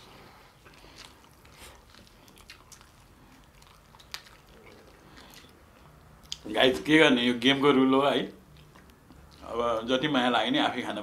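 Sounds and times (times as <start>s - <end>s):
faint chewing: 0.0s - 6.6s, 8.4s - 10.3s.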